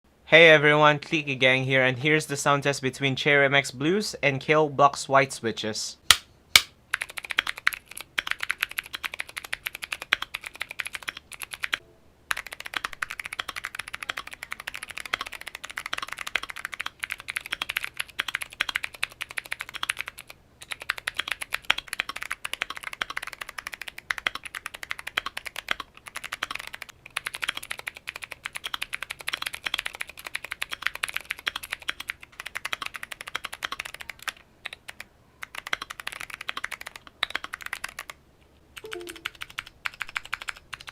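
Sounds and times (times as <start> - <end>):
fast typing on clicky keyboard: 6.9 - 38.2, 38.8 - 40.9.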